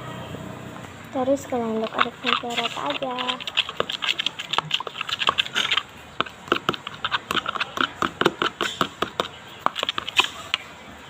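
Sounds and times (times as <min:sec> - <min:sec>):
slime stirred with wet clicks: 0:01.5 - 0:10.7.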